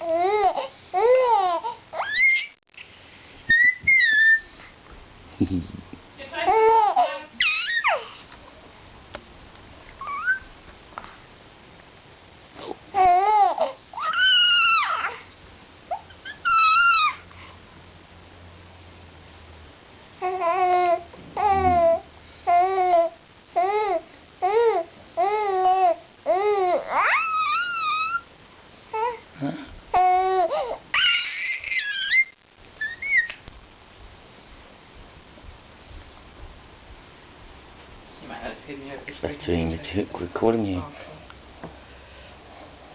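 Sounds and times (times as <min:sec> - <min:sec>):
baby squealing: 0:00.0 - 0:02.6, 0:03.5 - 0:04.6, 0:06.5 - 0:08.2, 0:10.0 - 0:10.5, 0:13.0 - 0:15.3, 0:15.9 - 0:17.2, 0:20.5 - 0:22.0, 0:24.5 - 0:28.3, 0:30.0 - 0:33.4.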